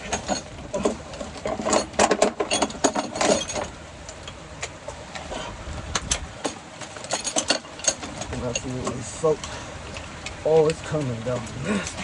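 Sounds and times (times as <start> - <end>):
hand tools clanking on metal: 0.0 - 4.8, 6.0 - 12.0
rain hiss: 2.6 - 12.0.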